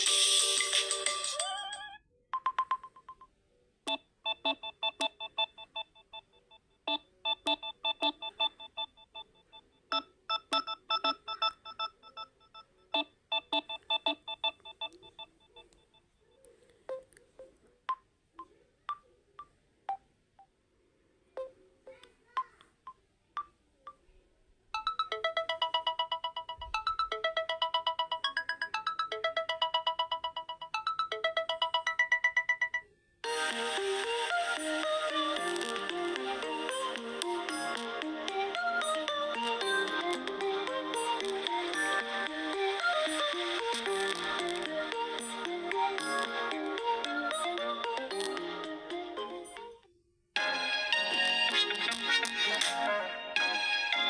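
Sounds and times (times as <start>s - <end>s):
electronic phone ringtones: 3.9s - 16.1s, 24.8s - 48.2s
fast repeating ringtone: 4.3s - 16.1s, 24.8s - 33.6s.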